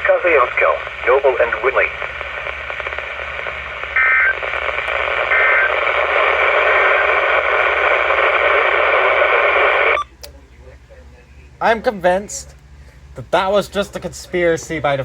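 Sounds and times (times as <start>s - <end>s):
radio static: 0.0s - 10.0s.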